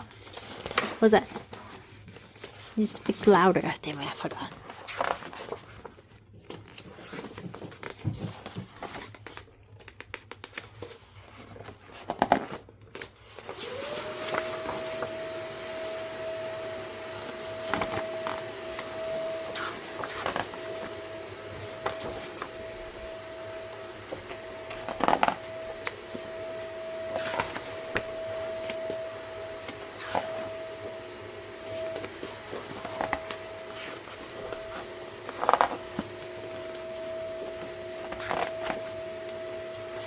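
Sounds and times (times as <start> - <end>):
steady machine whine: 14.0 - 40.0.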